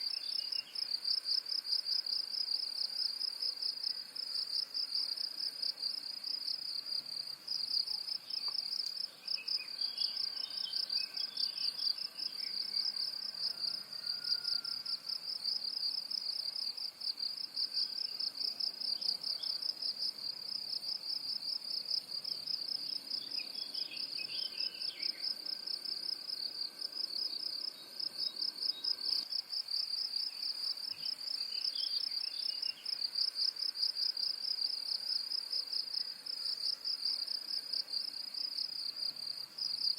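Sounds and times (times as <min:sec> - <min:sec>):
high-pitched insect trill: 0:07.8 - 0:21.4.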